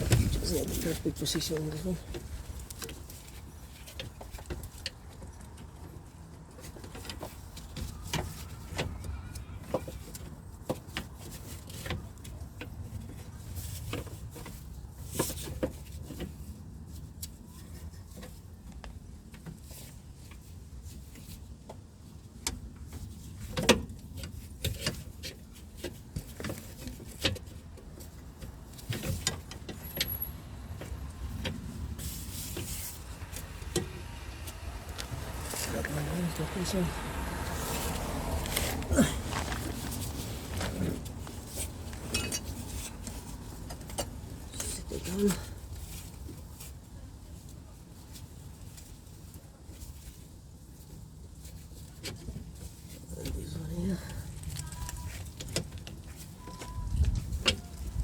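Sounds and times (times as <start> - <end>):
metal parts and tools clinking: 37.7 - 44.8.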